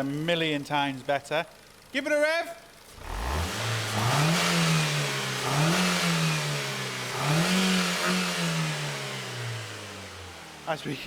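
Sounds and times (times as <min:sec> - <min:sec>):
car engine revving: 0:02.9 - 0:11.0.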